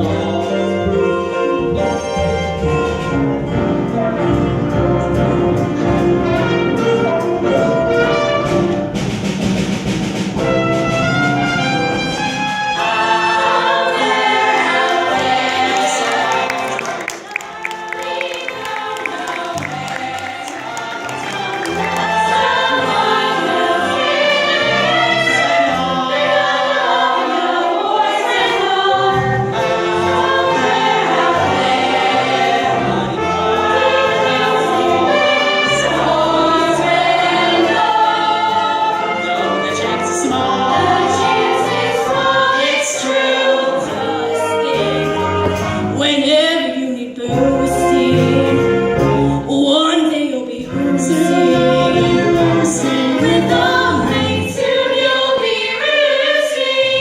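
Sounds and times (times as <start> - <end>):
chorus singing: 0.0 - 9.0, 11.3 - 57.0
low musical accompaniment: 0.0 - 57.0.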